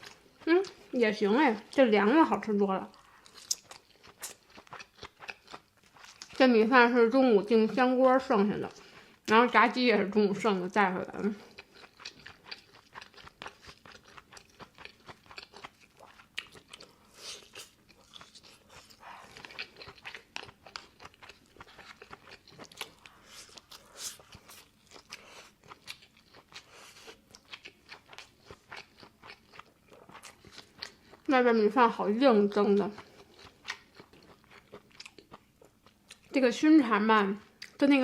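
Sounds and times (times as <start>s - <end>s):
person chewing crunchy food: 0.0s - 1.0s, 2.9s - 6.5s, 11.4s - 31.3s, 32.9s - 36.4s.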